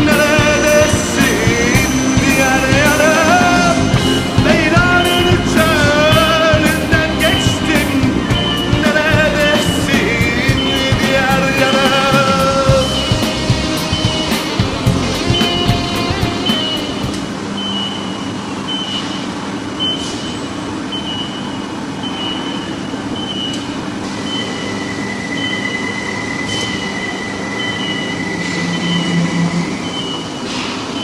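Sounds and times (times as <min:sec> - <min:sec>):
long high whine: 0:00.0 - 0:20.0, 0:20.7 - 0:31.0
short high squeal: 0:08.3 - 0:31.0.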